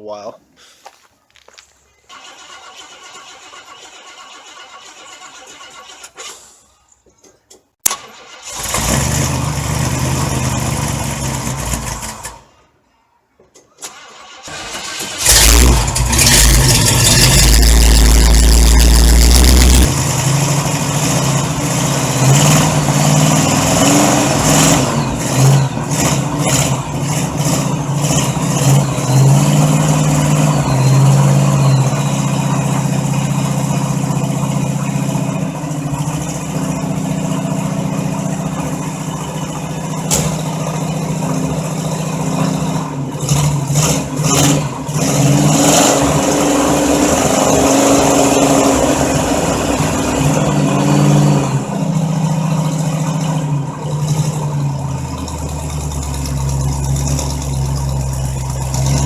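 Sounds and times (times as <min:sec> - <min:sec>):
car engine starting: 0:02.1 - 0:12.8, 0:13.6 - 0:59.0
car engine revving: 0:08.2 - 0:12.5, 0:14.3 - 0:59.0
car engine idling: 0:14.5 - 0:45.0, 0:51.6 - 0:59.0.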